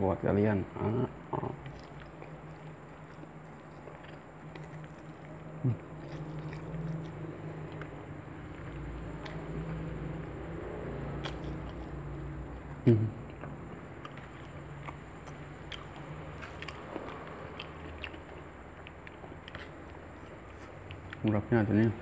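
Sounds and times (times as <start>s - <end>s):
steady low hum: 0.0s - 22.0s
person chewing food: 1.2s - 22.0s.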